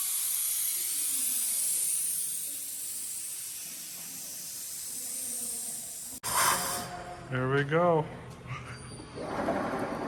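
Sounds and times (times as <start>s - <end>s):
air hissing from tire valve: 0.0s - 7.1s.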